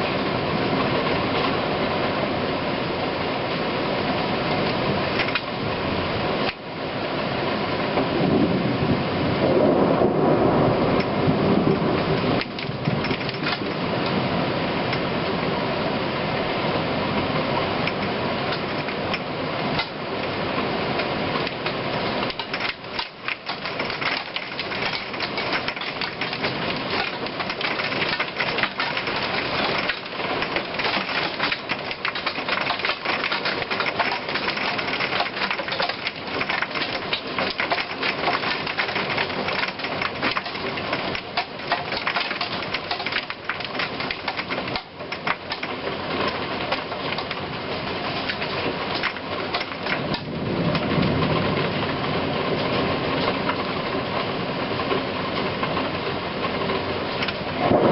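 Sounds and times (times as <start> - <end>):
heavy rain pelting hard surfaces: 0.0 - 57.9.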